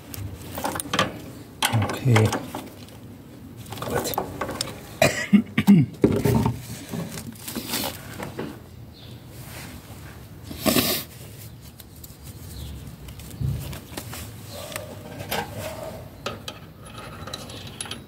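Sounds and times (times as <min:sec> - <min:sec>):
scraping rustle: 0:06.3 - 0:08.6, 0:09.3 - 0:16.1.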